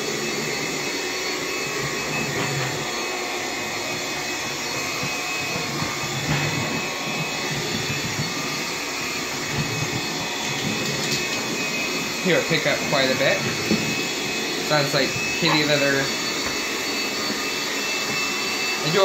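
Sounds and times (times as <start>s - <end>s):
stick vacuum running: 0.0s - 19.0s.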